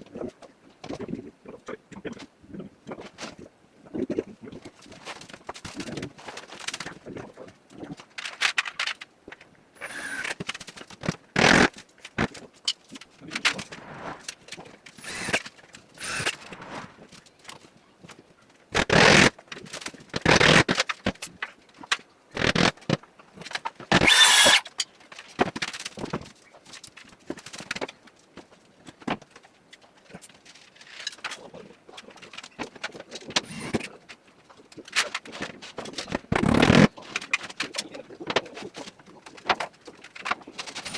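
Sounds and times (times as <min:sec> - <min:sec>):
power tool bursts: 0:09.8 - 0:10.4, 0:11.4 - 0:11.7, 0:15.0 - 0:15.4, 0:16.0 - 0:16.5, 0:22.4 - 0:22.7, 0:23.9 - 0:24.8.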